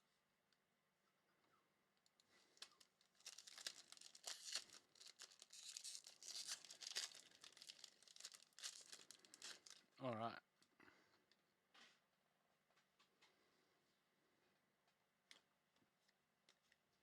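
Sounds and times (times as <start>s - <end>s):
wrapper tearing and crinkling: 2.3s - 9.9s.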